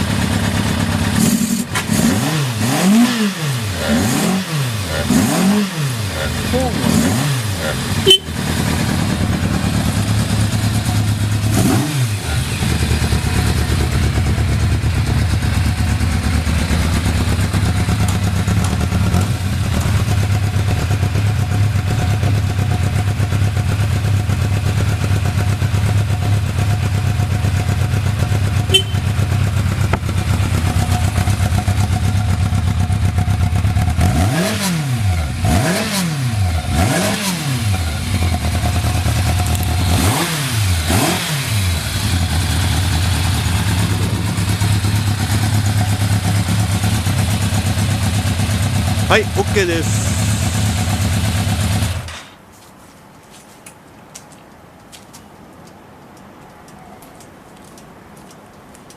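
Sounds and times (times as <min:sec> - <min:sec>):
motorcycle engine idling and revving: 0:00.0 - 0:52.2.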